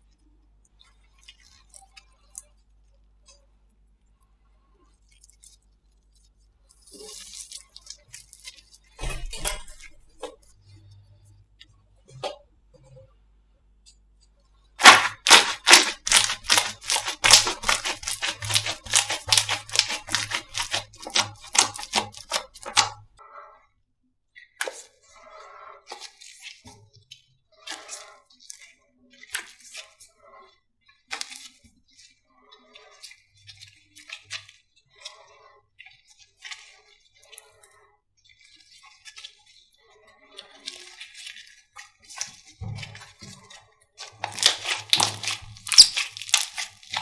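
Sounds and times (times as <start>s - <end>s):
slime squished by hand: 14.8s - 23.0s, 44.0s - 47.0s.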